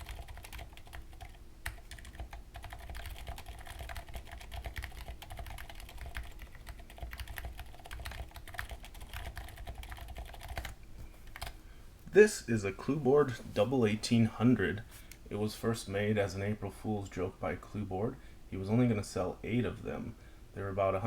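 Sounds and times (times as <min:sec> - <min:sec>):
mechanical keyboard typing: 0:00.0 - 0:10.8.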